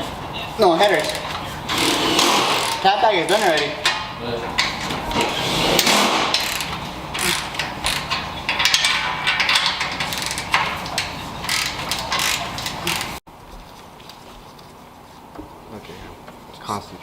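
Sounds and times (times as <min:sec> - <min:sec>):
ratchet wrench clicking: 0:01.0 - 0:04.0, 0:06.3 - 0:13.2.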